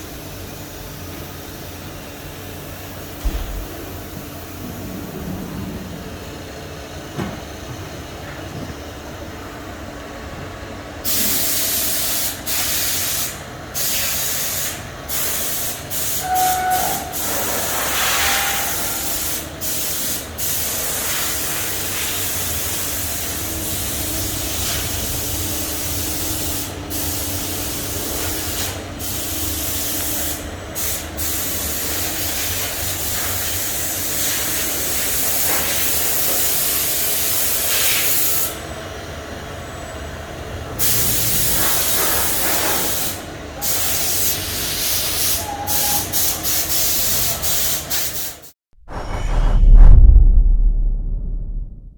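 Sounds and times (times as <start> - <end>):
coolant hissing spray: 11.0 - 16.2.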